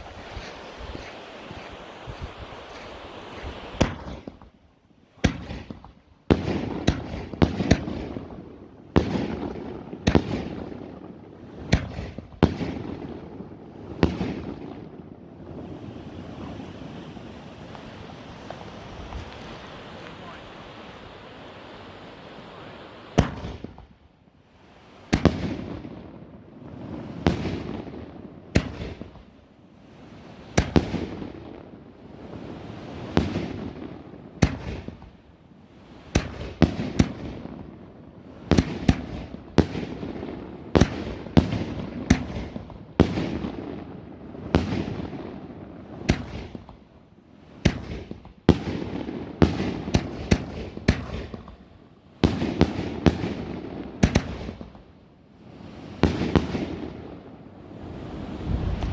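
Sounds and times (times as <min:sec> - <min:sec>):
firework shell bangs with echo: 0:23.2 - 0:23.9.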